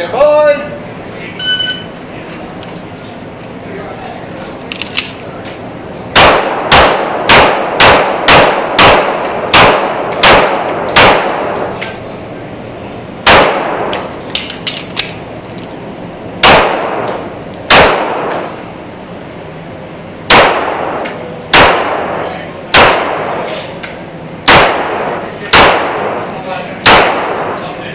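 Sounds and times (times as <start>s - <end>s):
echoing pistol shots: 6.1s - 11.6s, 13.2s - 14.1s, 16.4s - 18.4s, 20.3s - 23.4s, 24.4s - 27.6s.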